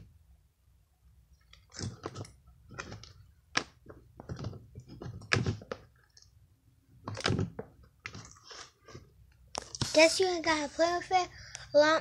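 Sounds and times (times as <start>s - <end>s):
slime squelching with wet clicks: 1.1s - 4.4s, 5.2s - 6.4s.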